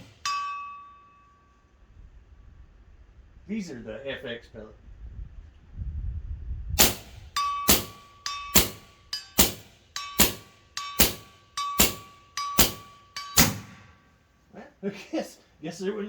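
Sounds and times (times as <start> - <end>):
thin steady ringing tone: 0.0 - 1.9, 7.2 - 14.2
suppressed air rifle shots: 6.8 - 14.0.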